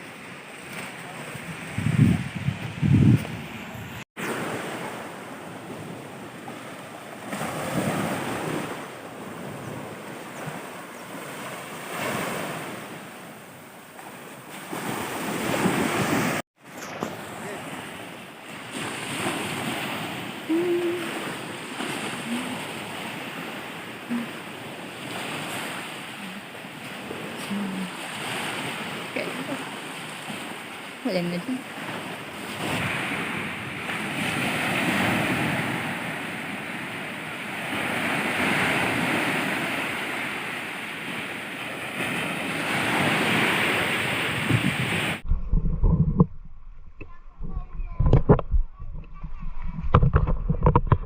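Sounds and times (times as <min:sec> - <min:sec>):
sea waves washing onto shore: 0:00.0 - 0:45.3
wind buffeting microphone: 0:00.9 - 0:06.6, 0:41.9 - 0:51.0.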